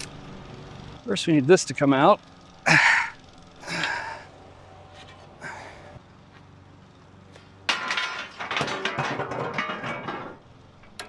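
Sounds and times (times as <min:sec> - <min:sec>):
metal clanking and scraping: 0:07.7 - 0:11.0.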